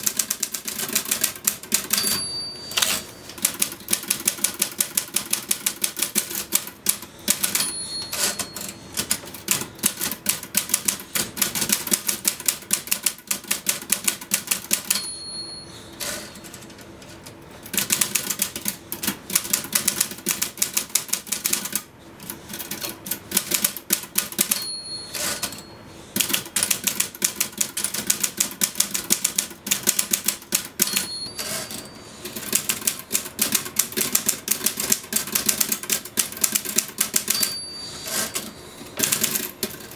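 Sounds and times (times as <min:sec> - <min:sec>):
typewriter typing: 0:00.0 - 0:15.1, 0:16.0 - 0:25.6, 0:26.2 - 0:39.9
typewriter bell ringing: 0:01.7 - 0:03.8, 0:07.1 - 0:09.2, 0:14.6 - 0:16.6, 0:24.2 - 0:25.8, 0:30.6 - 0:32.4, 0:36.5 - 0:39.4.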